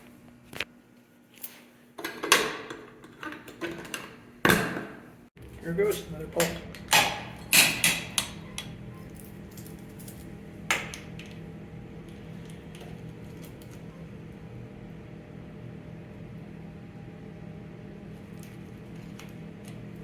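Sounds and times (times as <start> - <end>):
steady low hum: 4.2 - 20.0
fire alarm pull station clatter: 6.4 - 11.4
keys jangling: 7.4 - 10.4.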